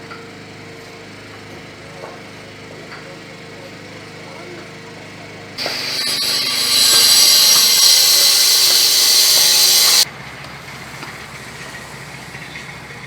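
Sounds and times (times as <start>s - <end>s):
engine hum: 5.6s - 10.0s
power tool hissing rush: 5.6s - 10.1s.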